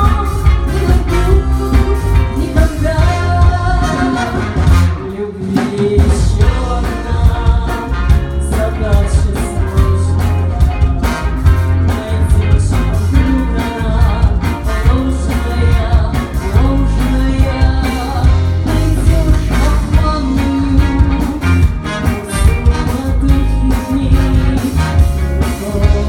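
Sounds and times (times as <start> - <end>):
live rock band playing: 0.0 - 26.0
person singing: 0.0 - 26.0.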